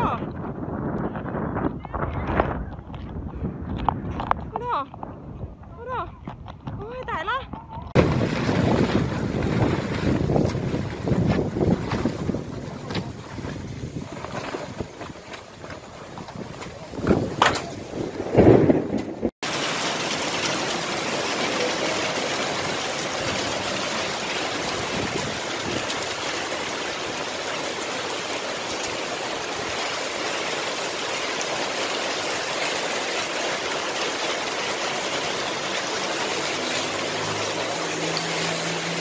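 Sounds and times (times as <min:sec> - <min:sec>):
rushing water: 0:07.8 - 0:39.0.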